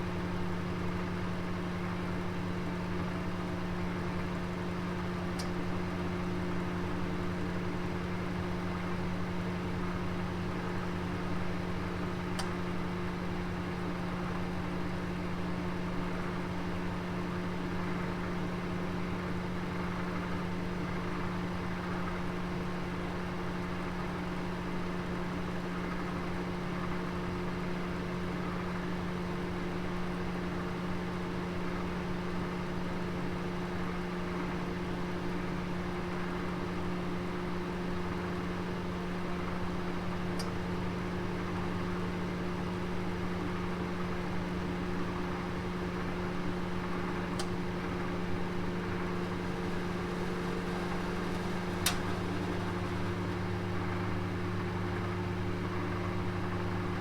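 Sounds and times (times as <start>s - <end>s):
oven humming: 34.4s - 57.0s.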